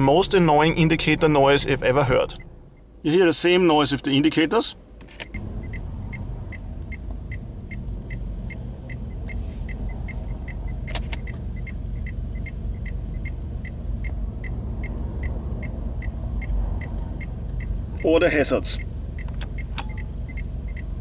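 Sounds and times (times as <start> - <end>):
car cabin rumble: 0.0 - 21.0
car indicator ticking: 5.0 - 21.0
sharp click: 19.2 - 20.1.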